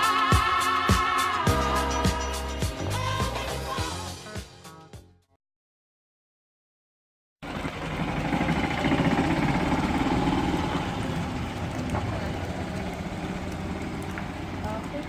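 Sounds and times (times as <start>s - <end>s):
engine running with pulsing rumble: 7.4s - 15.0s.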